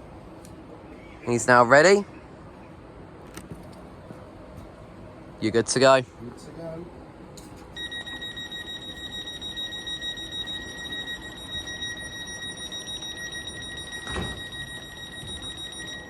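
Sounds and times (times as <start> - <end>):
door-closing warning alarm: 7.8 - 16.0
thump: 14.0 - 14.5.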